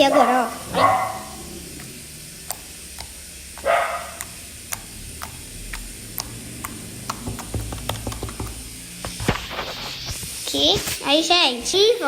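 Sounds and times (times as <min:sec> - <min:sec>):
dog barking: 0:00.0 - 0:02.0, 0:03.6 - 0:04.4
slime clicking and popping: 0:01.7 - 0:09.2.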